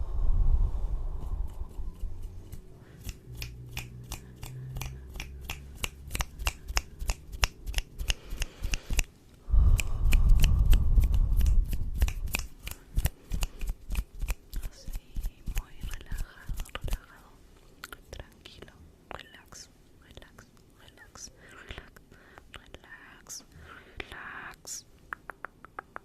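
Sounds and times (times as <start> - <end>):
muffled rumble against microphone: 0.0 - 4.1, 9.5 - 12.3.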